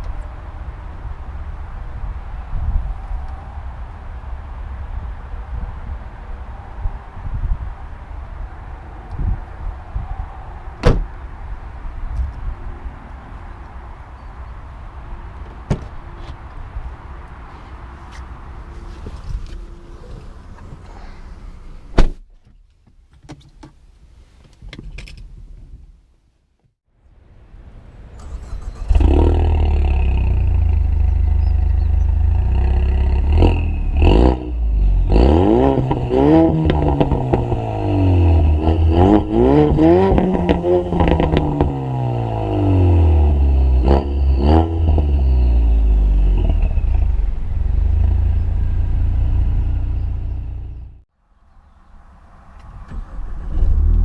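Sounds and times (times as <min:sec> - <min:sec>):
car engine starting: 0:28.1 - 0:51.0, 0:52.4 - 0:54.0
car engine revving: 0:28.2 - 0:51.0.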